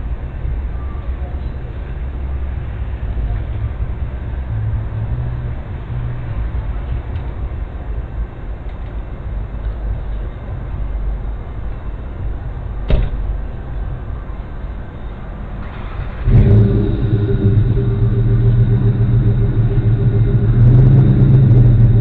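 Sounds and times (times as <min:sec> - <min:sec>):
vehicle engine idling: 0:12.1 - 0:22.0.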